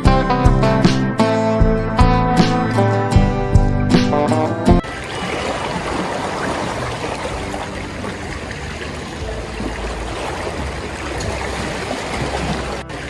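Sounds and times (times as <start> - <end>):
water rushing: 4.5 - 13.0.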